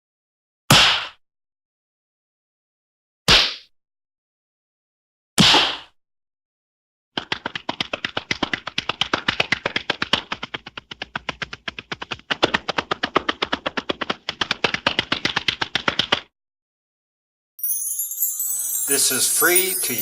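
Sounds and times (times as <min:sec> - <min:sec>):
rapid sharp hand slaps: 0:00.7 - 0:01.2, 0:07.2 - 0:16.3.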